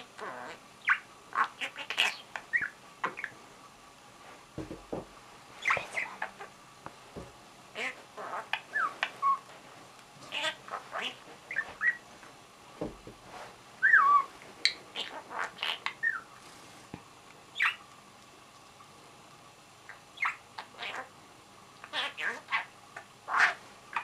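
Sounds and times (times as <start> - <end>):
budgerigar chattering: 0.2 - 3.3, 15.0 - 16.2.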